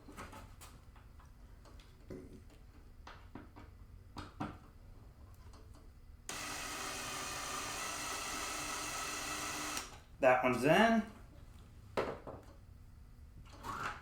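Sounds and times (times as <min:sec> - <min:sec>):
small power drill driving screw: 0:06.3 - 0:10.0.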